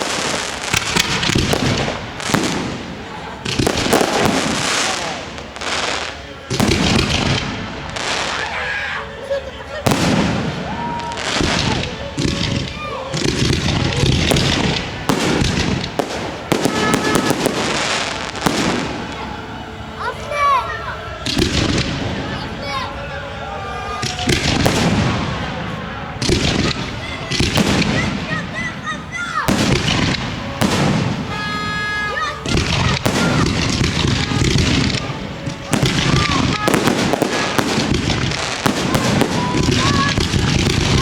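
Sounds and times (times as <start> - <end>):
fireworks bangs: 0.0 - 41.0
fireworks crackle: 0.0 - 41.0
fireworks cracks: 0.0 - 41.0.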